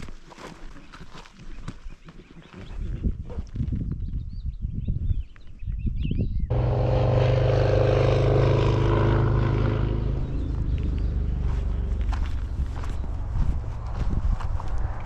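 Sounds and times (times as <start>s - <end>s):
motor vehicle engine running: 6.5s - 15.0s
bird chirps: 10.2s - 13.2s
footsteps: 10.8s - 15.0s.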